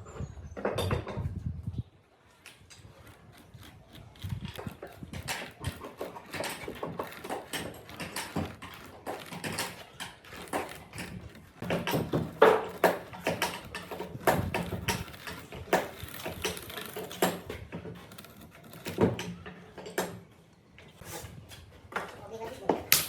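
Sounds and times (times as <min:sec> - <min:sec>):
wooden pieces knocking and clattering: 0:02.7 - 0:20.3.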